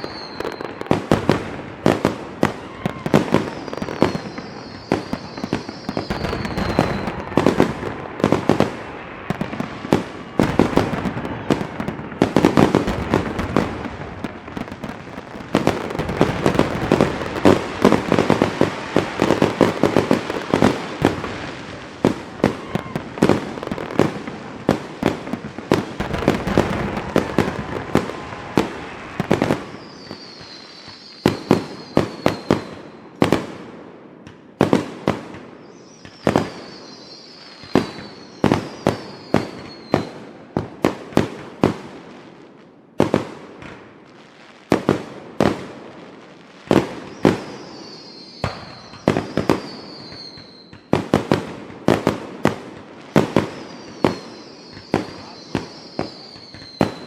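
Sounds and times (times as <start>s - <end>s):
firework whistles: 0.0s - 14.0s, 14.6s - 24.3s, 25.0s - 33.1s, 35.6s - 40.3s, 46.7s - 51.3s, 53.1s - 57.0s
fireworks bangs and crackle: 0.0s - 57.0s.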